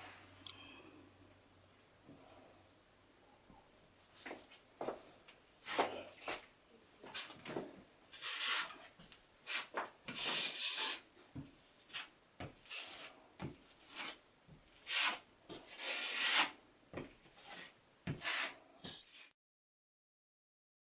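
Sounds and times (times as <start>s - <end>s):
scraping joint compound on drywall: 8.1s - 11.1s, 11.9s - 16.6s, 17.2s - 19.3s.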